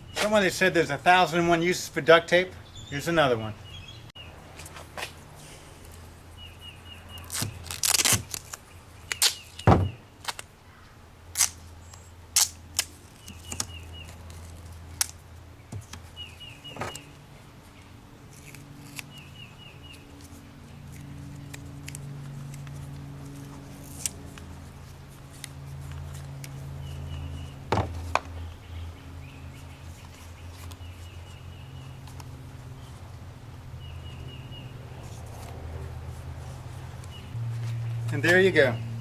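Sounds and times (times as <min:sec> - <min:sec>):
duct tape ripping off roll: 0:07.2 - 0:10.5, 0:11.3 - 0:15.2, 0:20.9 - 0:24.4.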